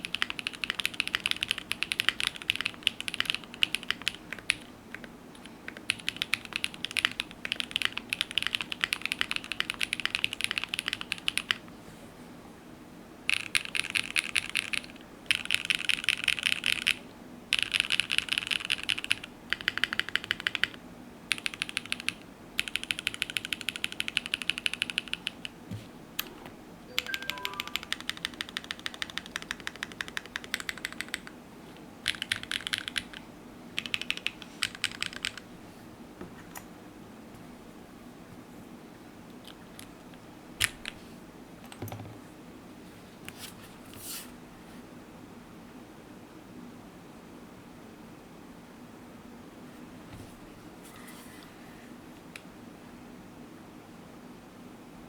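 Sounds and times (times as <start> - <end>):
mechanical keyboard keys clacking: 0.0 - 11.6, 13.3 - 25.6, 26.9 - 31.3, 32.0 - 33.2, 33.8 - 35.4.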